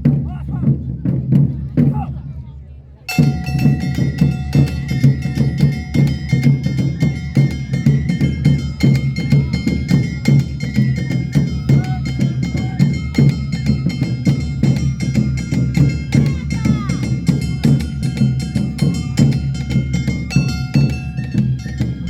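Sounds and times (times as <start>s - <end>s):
taiko drums: 0.0s - 2.3s, 3.1s - 22.0s
metallic or wooden strikes: 3.1s - 7.8s
held high notes: 3.1s - 22.0s.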